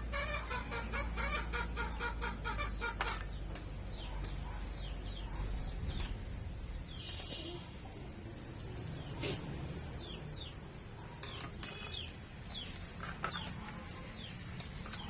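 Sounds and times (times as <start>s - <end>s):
chicken clucking: 0.0s - 6.2s, 9.0s - 15.0s.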